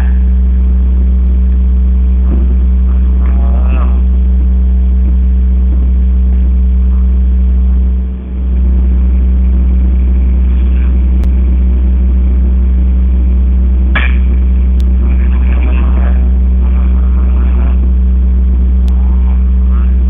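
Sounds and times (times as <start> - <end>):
loud low hum: 0.0 - 20.0
steady tones: 0.0 - 20.0
faint voices: 2.1 - 11.3, 14.0 - 20.0
sharp crack: 13.9 - 15.0.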